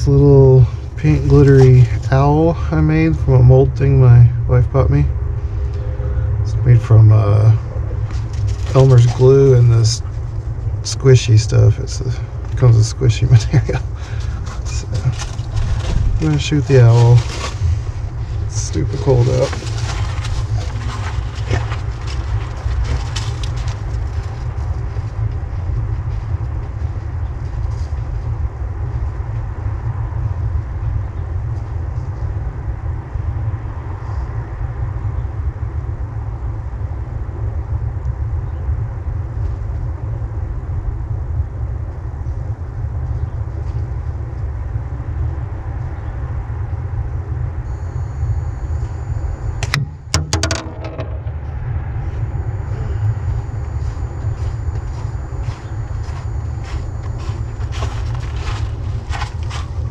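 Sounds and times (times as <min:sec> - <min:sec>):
wind buffeting microphone: 0:13.2 - 0:33.7
ball popping on target: 0:49.6 - 0:51.4.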